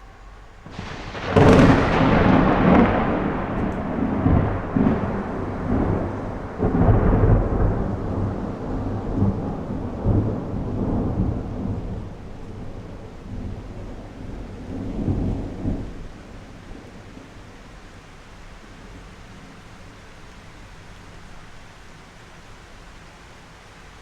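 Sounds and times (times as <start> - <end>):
thunder cracks: 0.0 - 17.5
rolling thunder: 0.0 - 18.0
rain falling: 0.0 - 24.0.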